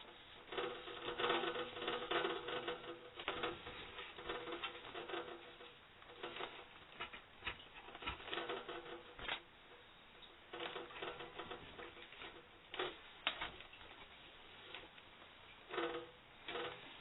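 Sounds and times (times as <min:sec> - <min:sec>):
hands handling plastic object: 0:00.0 - 0:09.5.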